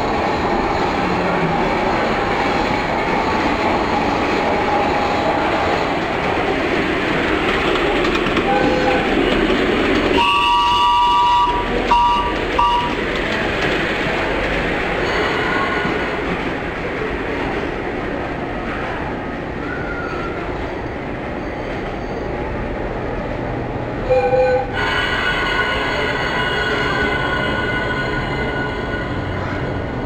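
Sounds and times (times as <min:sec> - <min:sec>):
train rumbling: 0:00.0 - 0:30.0
train horn blasts: 0:08.5 - 0:09.3, 0:10.2 - 0:13.0, 0:24.1 - 0:27.1.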